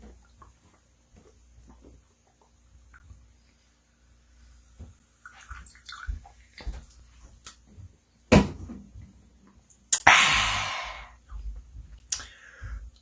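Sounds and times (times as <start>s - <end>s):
loud breathy hiss: 10.0s - 11.2s
person gulping: 10.0s - 11.2s.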